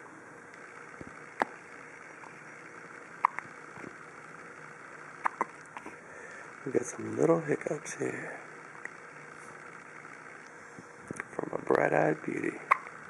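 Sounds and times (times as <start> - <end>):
steady background hiss: 0.0 - 13.0
baby hiccuping: 3.2 - 3.4, 5.2 - 5.9.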